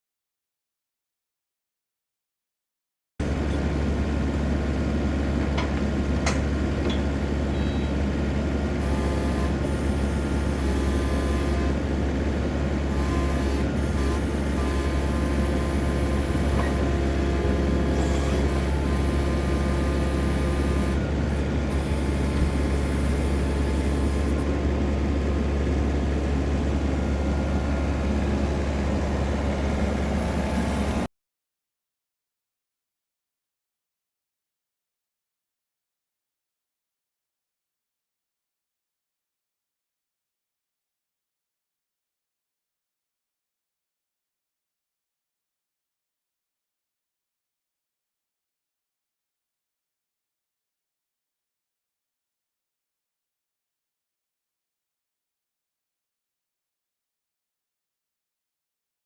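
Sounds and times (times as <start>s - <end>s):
excavator diesel engine running: 3.2s - 31.1s.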